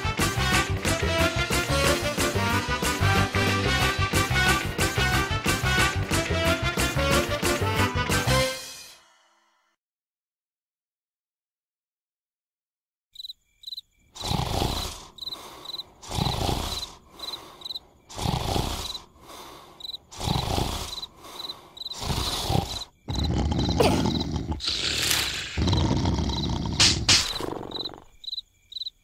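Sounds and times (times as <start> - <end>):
cricket chirps: 13.2 - 29.0
loud snoring: 14.2 - 28.2.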